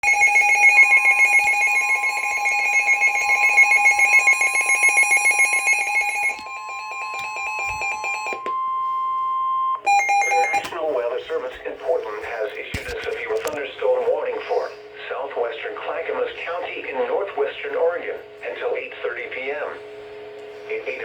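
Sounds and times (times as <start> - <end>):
pulsing electronic alarm: 0.0 - 11.1
steady alarm tone: 0.0 - 12.2.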